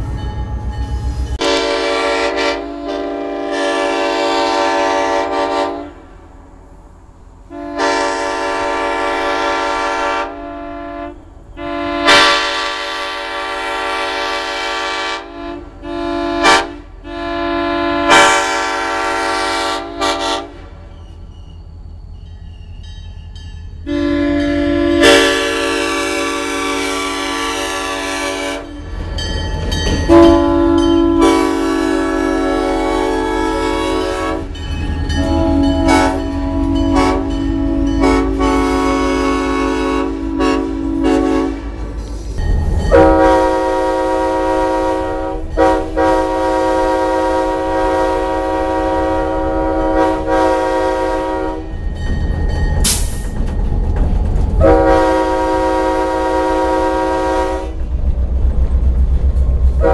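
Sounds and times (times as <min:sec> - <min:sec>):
train air horn blasts: 0:01.3 - 0:06.2, 0:07.5 - 0:20.8, 0:23.8 - 0:28.8, 0:30.1 - 0:42.0, 0:42.9 - 0:51.8, 0:54.6 - 0:57.8.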